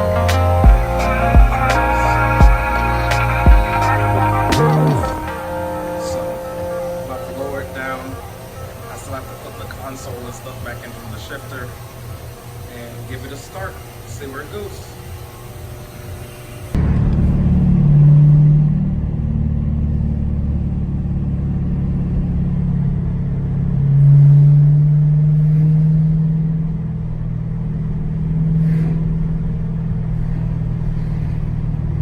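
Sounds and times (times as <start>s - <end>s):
car engine revving: 0.0s - 11.0s.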